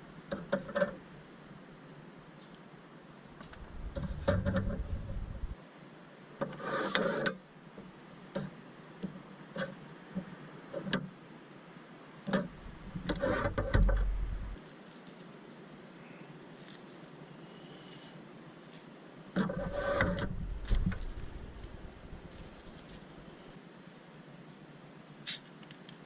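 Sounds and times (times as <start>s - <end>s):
low rumble: 3.6s - 5.6s, 13.9s - 14.6s, 20.2s - 23.2s
objects being handled: 12.3s - 15.8s, 16.5s - 23.6s.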